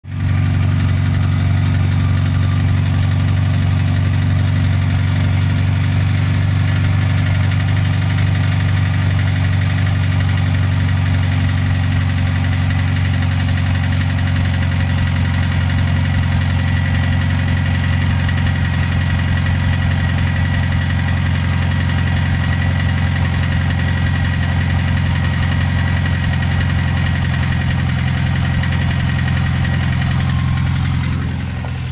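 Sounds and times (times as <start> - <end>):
knocking engine idling: 0.1 - 31.9.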